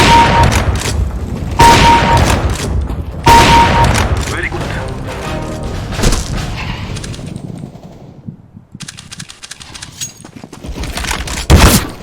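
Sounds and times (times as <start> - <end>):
rapid gunshots in a video game: 0.0 - 0.8.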